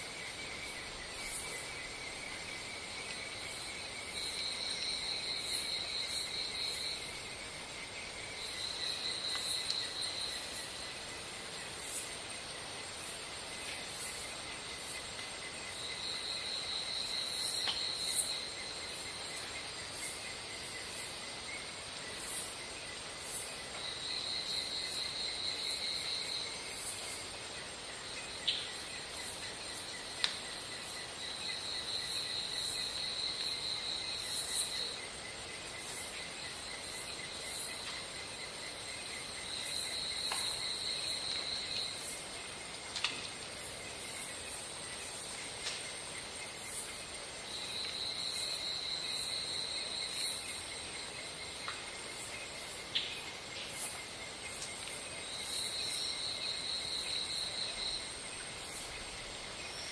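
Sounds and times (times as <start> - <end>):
insects buzzing: 0.0 - 59.9
loud insect trill: 0.0 - 59.9.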